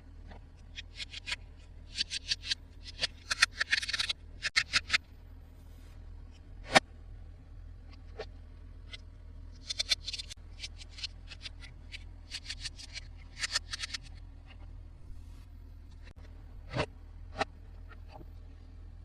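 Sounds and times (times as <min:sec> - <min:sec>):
plastic toy pieces clicking: 0:00.9 - 0:05.0.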